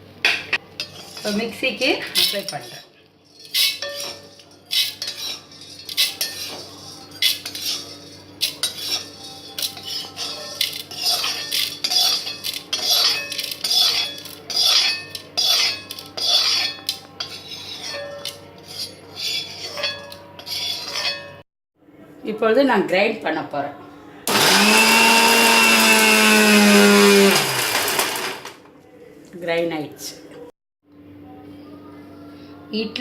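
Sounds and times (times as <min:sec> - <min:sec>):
metal spoon scraping and clinking: 0:00.8 - 0:21.4.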